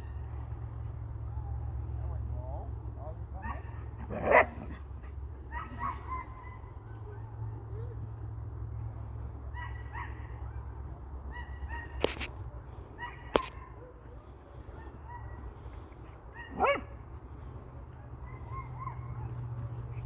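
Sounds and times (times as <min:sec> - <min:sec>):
dog yelping: 0:03.4 - 0:04.8, 0:16.4 - 0:16.9, 0:18.3 - 0:19.4.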